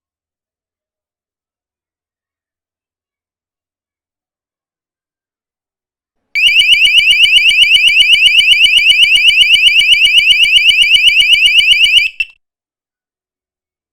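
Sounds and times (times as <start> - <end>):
alarm siren warbling: 6.4 - 12.3.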